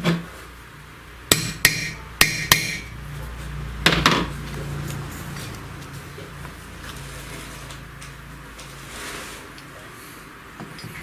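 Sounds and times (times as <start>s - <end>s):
hammer tapping metal: 1.3s - 3.0s, 3.9s - 4.3s.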